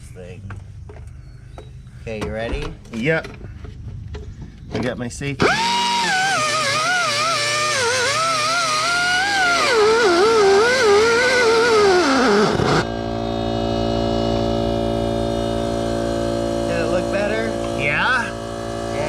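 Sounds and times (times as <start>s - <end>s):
machine hum with low buzz: 0.0s - 19.0s.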